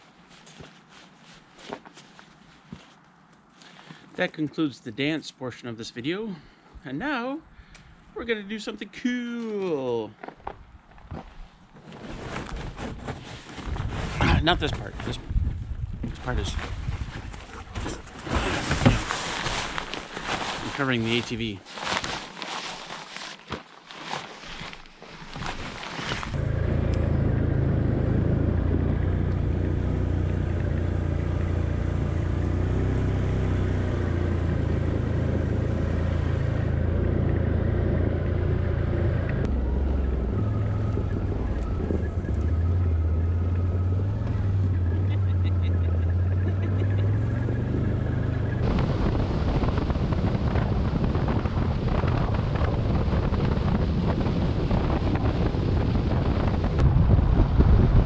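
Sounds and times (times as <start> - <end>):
road and wind noise: 10.2 - 22.1, 25.3 - 58.0
vehicle engine running: 26.4 - 54.0.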